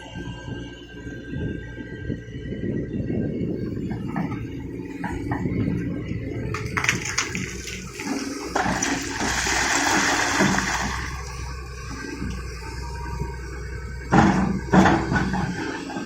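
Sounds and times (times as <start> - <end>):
excavator engine rumbling: 0.0 - 16.0
rushing splashing noise: 6.6 - 11.3.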